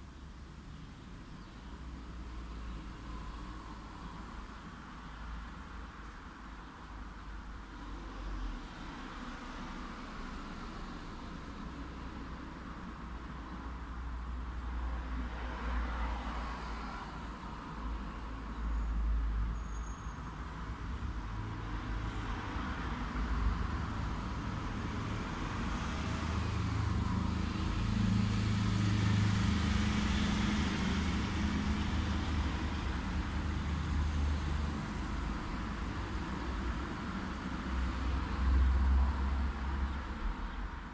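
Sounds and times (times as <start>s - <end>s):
low rumble of passing vehicles: 0.0s - 40.9s
vehicle engine hum passing: 14.5s - 40.9s.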